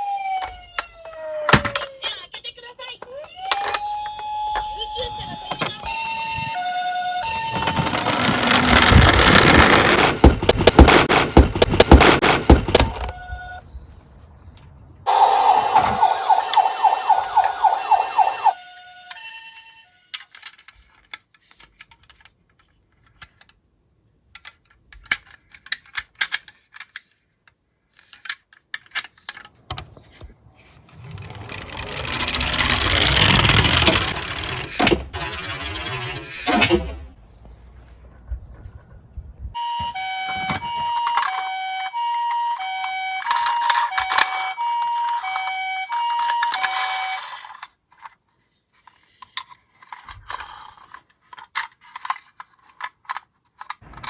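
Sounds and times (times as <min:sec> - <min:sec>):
clicks of toys being handled: 0:03.0 - 0:06.0, 0:20.1 - 0:30.3, 0:40.4 - 0:54.0
toy cars rolling with clattering rumble: 0:07.2 - 0:13.2, 0:30.6 - 0:37.1, 0:40.4 - 0:54.0
siren tone: 0:12.7 - 0:13.6, 0:15.1 - 0:19.9, 0:39.6 - 0:47.4
pulsing siren: 0:15.1 - 0:19.6, 0:39.6 - 0:47.4.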